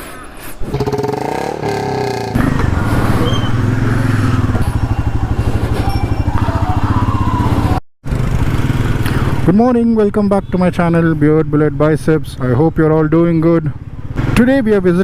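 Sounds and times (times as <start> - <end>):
motorcycle engine running: 0.7 - 9.5, 13.8 - 14.8.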